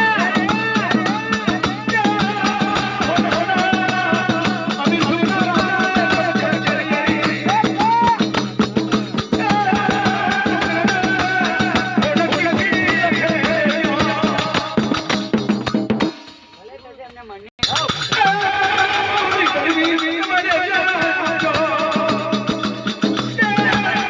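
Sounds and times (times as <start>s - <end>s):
fast hand percussion: 0.0s - 24.0s
person singing a winding melody: 17.7s - 24.0s.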